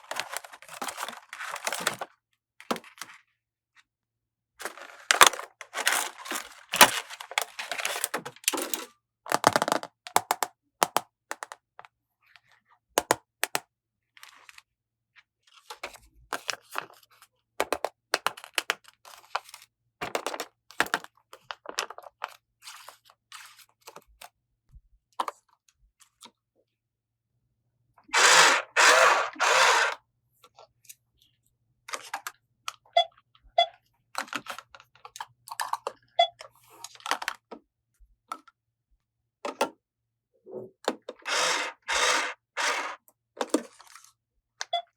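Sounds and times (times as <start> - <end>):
wrapper crinkling: 4.6 - 8.8
plastic toy pieces clicking: 5.1 - 11.6, 28.1 - 30.0, 41.2 - 43.0.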